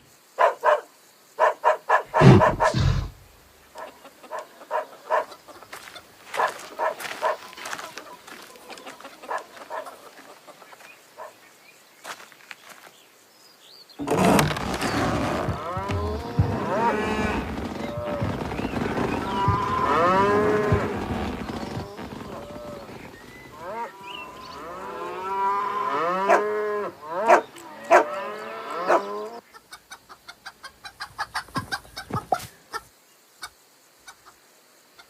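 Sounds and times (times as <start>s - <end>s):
din of overlapping animal calls: 0.4s - 11.6s, 14.8s - 32.9s
animal calls: 1.4s - 5.7s, 14.0s - 29.4s.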